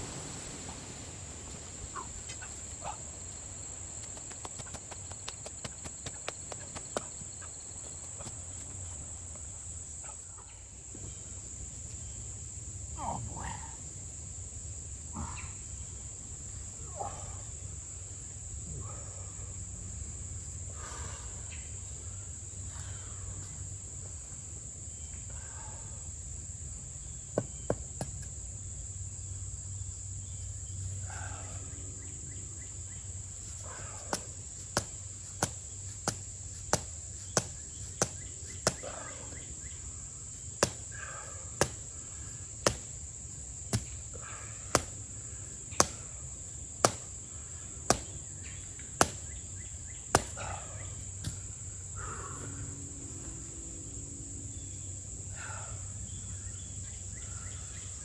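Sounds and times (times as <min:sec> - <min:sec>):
short calls: 0:00.0 - 0:10.6
insects droning: 0:00.0 - 0:58.0
sharp knocks: 0:40.6 - 0:40.8, 0:42.6 - 0:42.9, 0:44.7 - 0:45.0, 0:46.8 - 0:47.2, 0:47.9 - 0:48.2, 0:49.0 - 0:49.3, 0:50.1 - 0:50.4.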